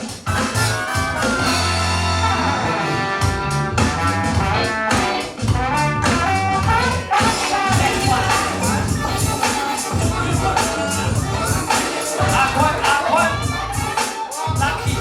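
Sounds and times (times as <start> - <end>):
funk dance music: 0.0 - 15.0.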